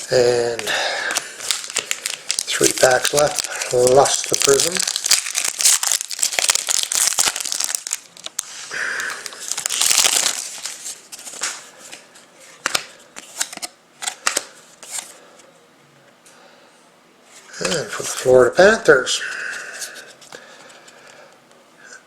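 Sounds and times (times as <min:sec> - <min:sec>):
foil wrapper tearing and crinkling: 0:00.2 - 0:11.6
cards clicking: 0:12.6 - 0:15.0.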